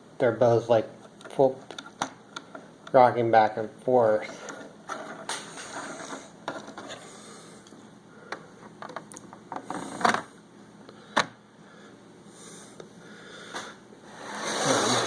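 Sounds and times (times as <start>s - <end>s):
plastic bricks rubbing: 8.7s - 10.3s.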